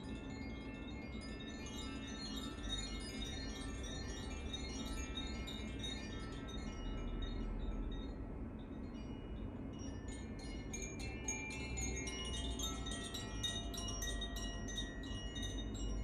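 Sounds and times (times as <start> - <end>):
carillon chimes ringing: 8.8 - 16.0.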